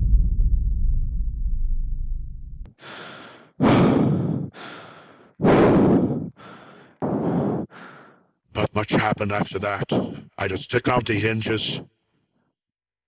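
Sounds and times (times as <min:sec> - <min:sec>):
low rumble: 0:00.0 - 0:02.7
person breathing heavily: 0:02.7 - 0:08.4, 0:09.8 - 0:10.4.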